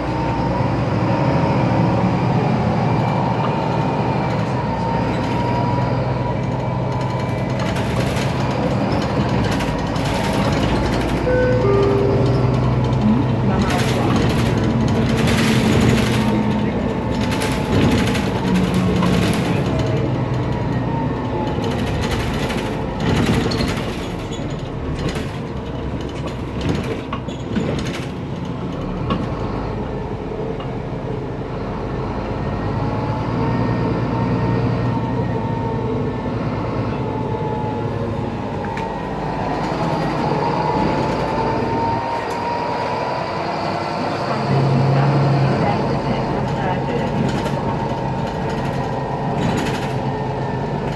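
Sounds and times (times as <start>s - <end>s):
bus diesel engine running: 0.0s - 50.9s
knocks and rattles: 3.4s - 29.4s, 46.5s - 50.9s.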